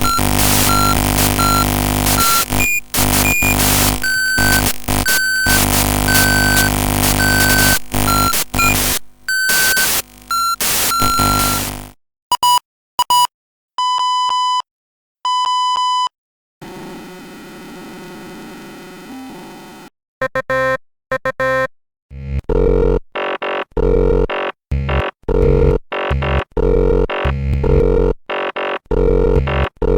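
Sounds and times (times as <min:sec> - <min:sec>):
clicks: 0:00.0 - 0:11.9
glitchy digital noise: 0:00.0 - 0:12.0, 0:16.6 - 0:19.8
steady electronic buzz: 0:00.0 - 0:12.0
stuttering glitch bursts: 0:00.0 - 0:12.0
electronic error beeps: 0:00.0 - 0:13.2.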